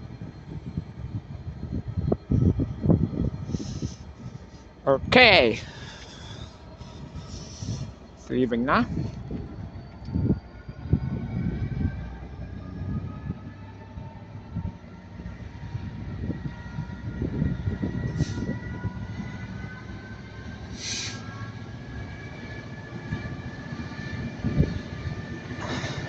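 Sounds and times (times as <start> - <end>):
locomotive engine accelerating: 0.0 - 26.0
low train rumble: 0.0 - 26.0
short hisses: 20.8 - 21.2.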